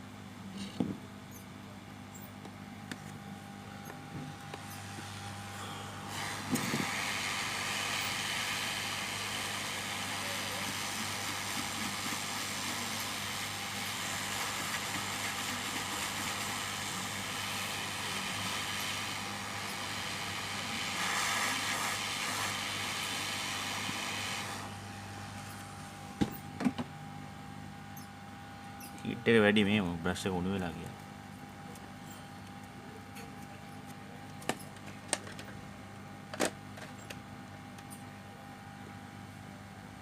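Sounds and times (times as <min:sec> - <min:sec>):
hot air station blowing: 0:03.8 - 0:26.4.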